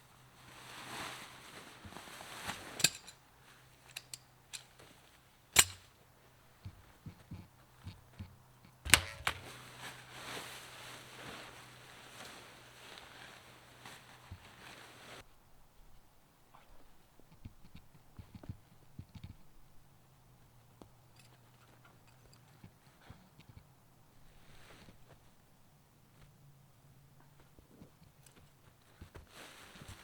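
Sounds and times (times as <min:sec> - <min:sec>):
camping gear rustling: 0:00.1 - 0:15.3, 0:27.7 - 0:30.0
sharp snaps and knocks: 0:07.2 - 0:09.6.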